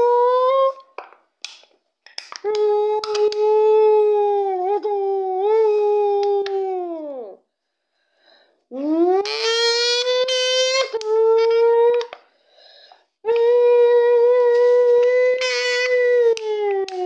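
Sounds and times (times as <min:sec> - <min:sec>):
drink can blown like a horn: 0:09.2 - 0:11.1, 0:15.4 - 0:16.2.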